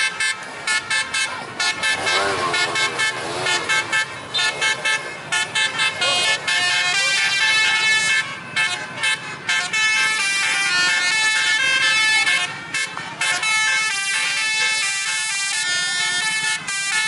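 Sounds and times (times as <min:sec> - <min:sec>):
bus multi-tone horns: 0:00.0 - 0:17.0.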